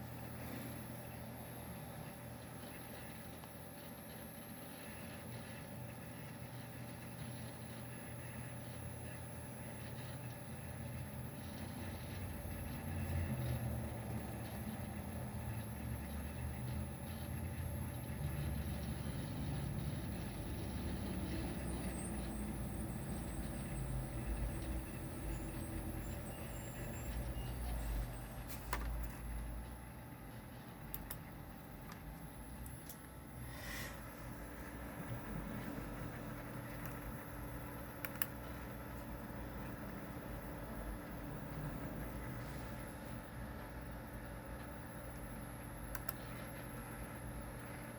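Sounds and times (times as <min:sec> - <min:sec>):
sharp click: 0:38.0 - 0:38.4, 0:45.9 - 0:46.2.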